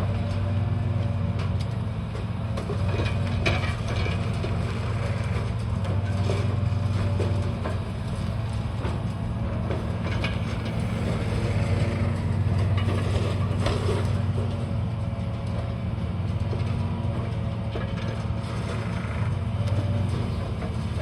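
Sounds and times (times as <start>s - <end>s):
diesel engine running: 0.0s - 21.0s
metal and debris clanking: 5.4s - 14.7s.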